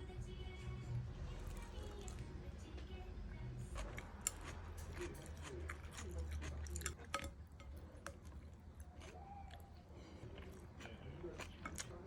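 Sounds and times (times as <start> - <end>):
chewing: 1.4 - 2.3, 3.6 - 12.0.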